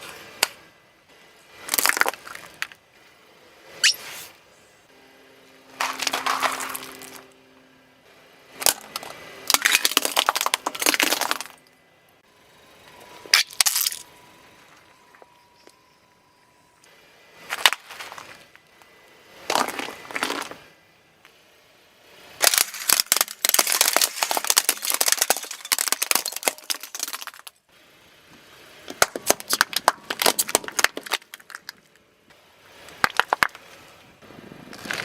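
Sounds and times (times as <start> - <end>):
objects crushed under car tyre: 1.7 - 2.8, 5.8 - 7.3, 8.6 - 11.7, 19.5 - 20.6, 22.4 - 27.6, 28.9 - 32.0.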